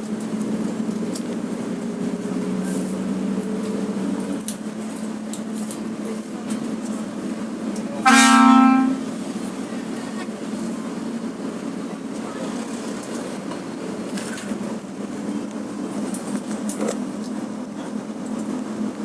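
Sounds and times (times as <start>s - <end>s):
bus engine humming: 0.0s - 19.0s
bus horn blast: 8.0s - 9.2s.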